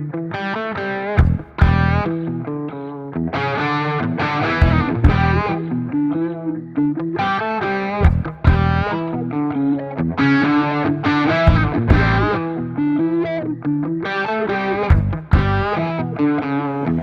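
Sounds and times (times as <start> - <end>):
distorted electric guitar: 0.0 - 17.0
steady drum beat: 1.2 - 2.0, 4.6 - 5.5, 8.0 - 8.9, 11.5 - 12.3, 14.9 - 15.7.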